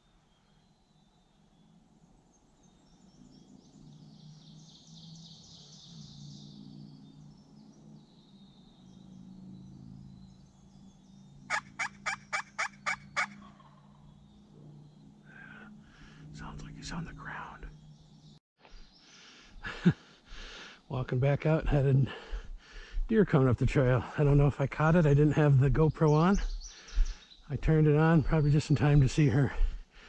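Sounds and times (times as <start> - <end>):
turkey yelps: 11.5 - 13.9.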